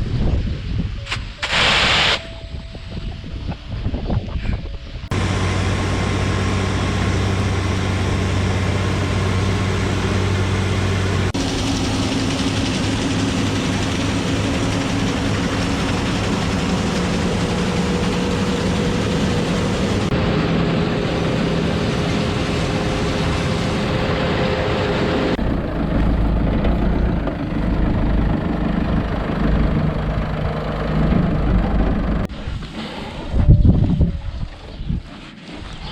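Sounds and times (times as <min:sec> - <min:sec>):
broad mechanical hum: 0:03.5 - 0:32.3
combine harvester engine running: 0:05.0 - 0:32.3.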